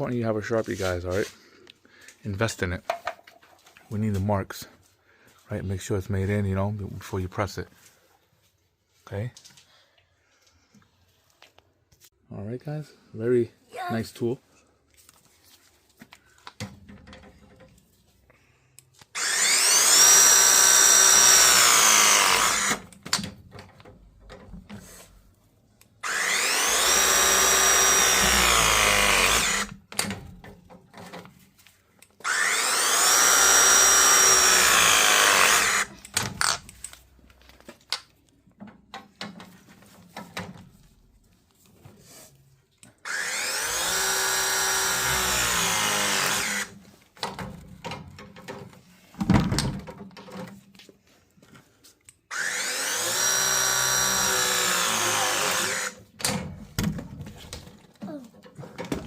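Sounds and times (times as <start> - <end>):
pressing tool motor whine: 19.2 - 22.8, 26.0 - 29.7, 32.2 - 35.9, 43.1 - 46.7, 52.3 - 56.0.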